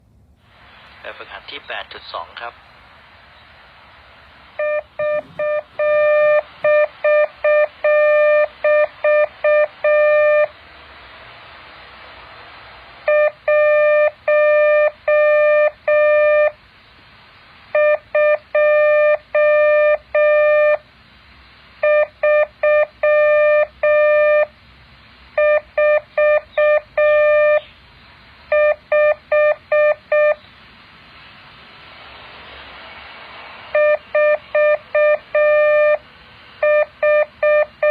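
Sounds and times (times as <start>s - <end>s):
steady hiss: 0.0s - 6.8s, 10.4s - 13.7s, 16.6s - 17.8s, 20.8s - 21.8s, 27.6s - 28.5s, 30.4s - 33.8s
morse code beeps: 4.6s - 10.5s, 13.1s - 16.6s, 17.8s - 20.8s, 21.8s - 24.5s, 25.4s - 27.6s, 28.5s - 30.4s, 33.8s - 36.0s, 36.6s - 37.9s.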